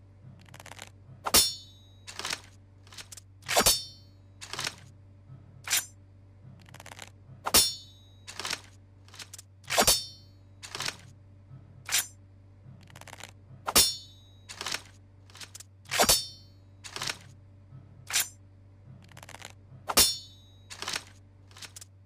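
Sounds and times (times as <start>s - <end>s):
low hum: 0.0s - 22.0s
sword swipes and metallic clangs: 1.3s - 2.4s, 3.4s - 4.0s, 5.7s - 5.9s, 7.5s - 7.9s, 9.7s - 10.2s, 11.9s - 12.1s, 13.7s - 14.8s, 15.9s - 16.4s, 18.1s - 18.4s, 19.9s - 21.0s.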